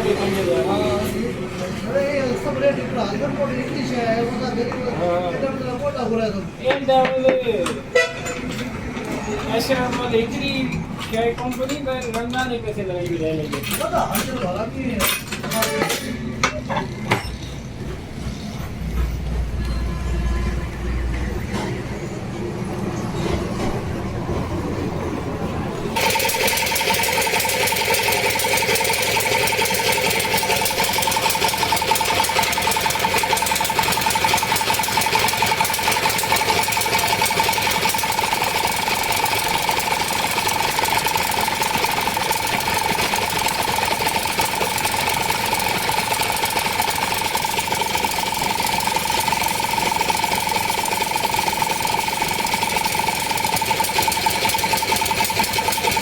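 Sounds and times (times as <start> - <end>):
machine rattling and whining: 25.8 - 56.0.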